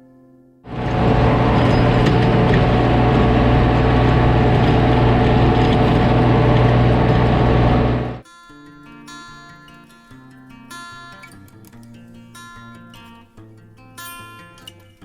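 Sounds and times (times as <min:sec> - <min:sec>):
tractor engine under load: 0:00.7 - 0:08.2.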